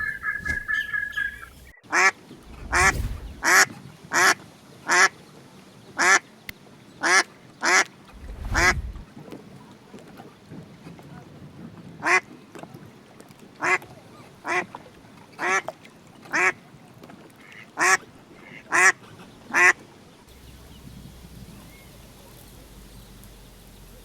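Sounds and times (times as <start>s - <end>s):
duck quacking: 0.0s - 2.1s.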